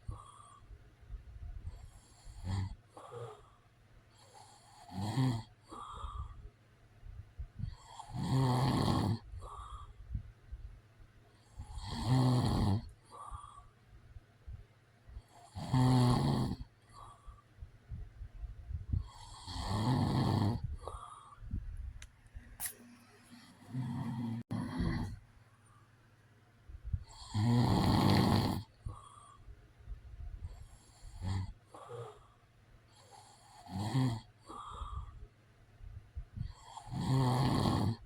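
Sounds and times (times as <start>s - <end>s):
man snoring: 1.9s - 3.5s, 4.2s - 6.4s, 7.7s - 9.8s, 11.5s - 13.5s, 15.3s - 17.1s, 19.0s - 21.1s, 23.6s - 25.2s, 27.0s - 29.3s, 30.8s - 32.2s, 33.0s - 35.1s, 36.5s - 38.0s.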